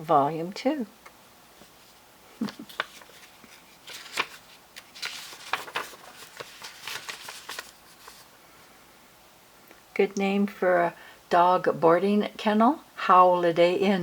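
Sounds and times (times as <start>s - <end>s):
paper rustling: 1.6s - 8.3s.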